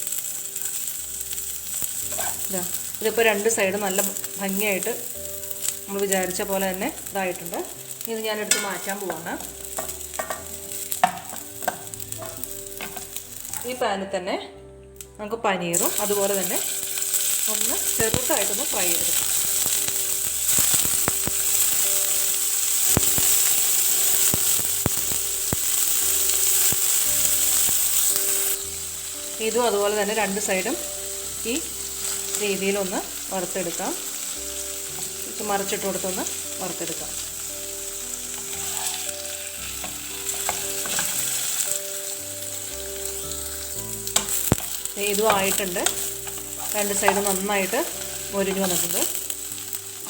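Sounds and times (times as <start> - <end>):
cheese frying in oil: 0.0 - 13.8, 15.8 - 50.0
utensil tapping: 8.4 - 13.2.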